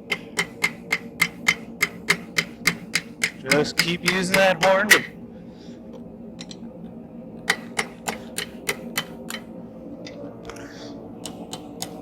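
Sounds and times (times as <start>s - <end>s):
hammer tapping hot metal: 0.1s - 5.1s.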